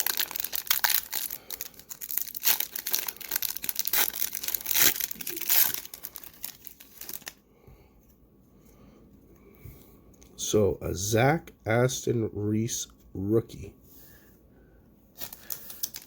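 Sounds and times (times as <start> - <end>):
card pack wrapper tearing and crinkling: 0.0 - 7.4, 15.2 - 16.0.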